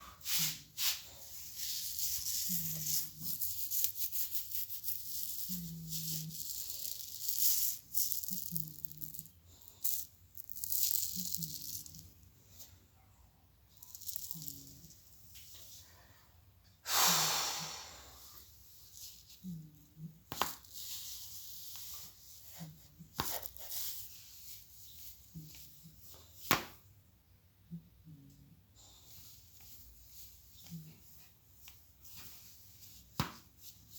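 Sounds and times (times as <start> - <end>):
rustling: 0.1 - 12.8, 13.7 - 16.0, 18.4 - 26.8
rasping hiss: 16.8 - 18.4.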